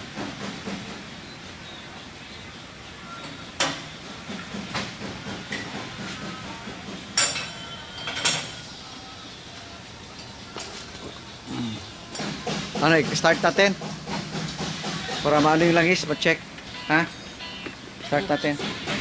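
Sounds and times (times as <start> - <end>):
sharp knocks and clanks: 3.3 - 8.5, 12.1 - 15.9.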